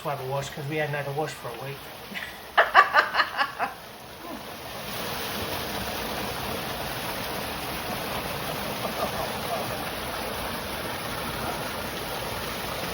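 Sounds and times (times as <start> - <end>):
water running into pool: 0.0 - 12.9
burst of laughter: 2.2 - 3.8, 8.8 - 9.8.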